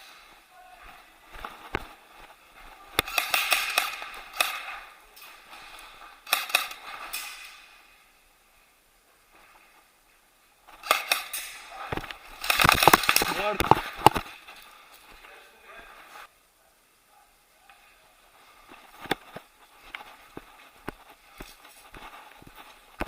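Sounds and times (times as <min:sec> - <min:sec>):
airsoft guns firing: 0:02.9 - 0:07.8, 0:10.8 - 0:14.3.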